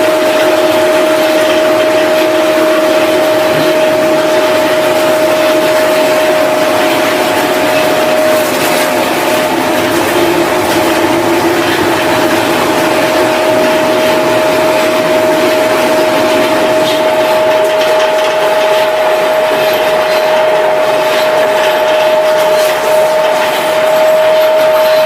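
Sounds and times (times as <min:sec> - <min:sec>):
factory machinery running: 0:00.0 - 0:25.0.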